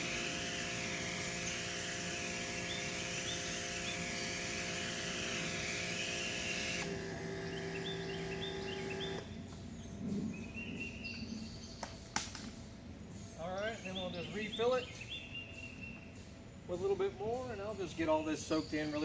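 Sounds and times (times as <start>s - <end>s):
pressure washer spray hiss: 0.0s - 7.0s
motor hum: 0.0s - 9.4s
birds chirping: 0.0s - 19.0s.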